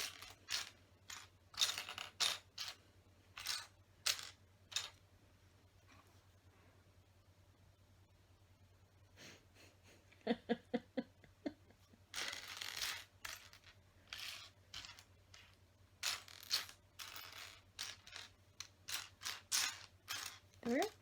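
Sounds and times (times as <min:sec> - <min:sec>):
plastic pieces clattering: 0:00.0 - 0:02.8, 0:03.4 - 0:05.0, 0:12.1 - 0:21.0.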